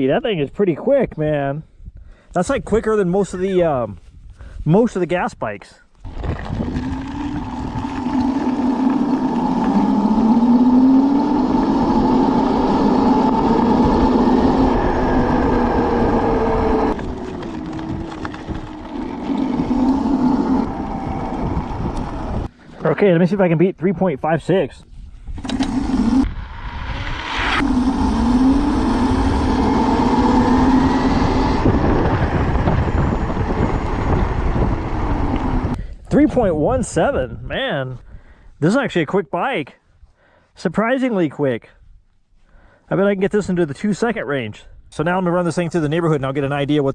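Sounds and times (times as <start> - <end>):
wind rumble on microphone: 1.8 - 4.7, 6.0 - 22.5, 24.8 - 38.4
electric motor whining: 6.1 - 22.5, 25.4 - 35.8
steady rushing noise: 25.4 - 35.8.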